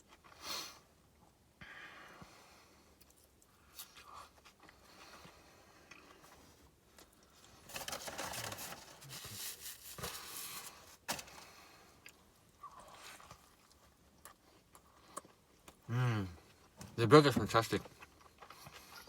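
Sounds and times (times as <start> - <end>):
person chewing: 12.0 - 16.6.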